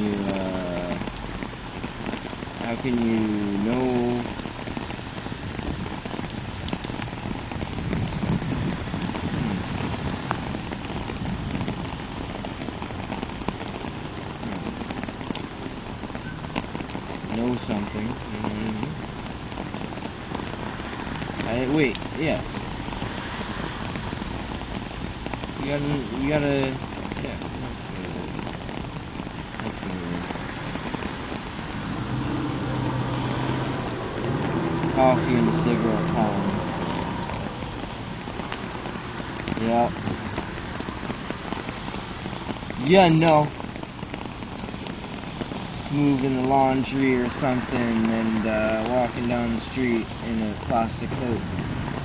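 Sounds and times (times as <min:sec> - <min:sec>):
raindrops ticking on a surface: 0:00.0 - 0:52.0
steady rain falling: 0:00.0 - 0:52.0.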